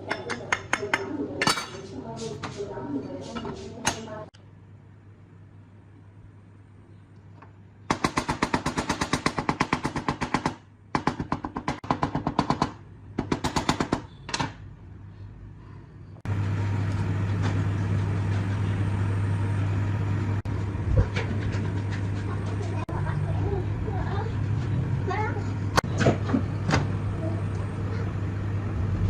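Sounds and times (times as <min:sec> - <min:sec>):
power tool hammering: 0:07.9 - 0:14.5
loud machine noise with low hum: 0:13.9 - 0:29.0.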